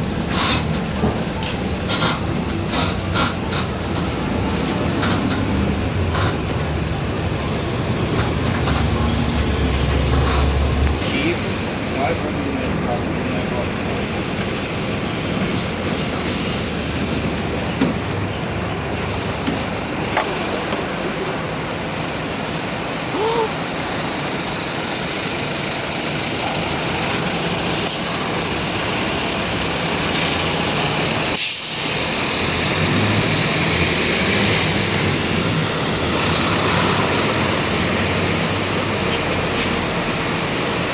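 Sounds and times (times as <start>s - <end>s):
bus diesel engine running: 0.0s - 40.9s
air brake release hiss: 31.4s - 32.1s.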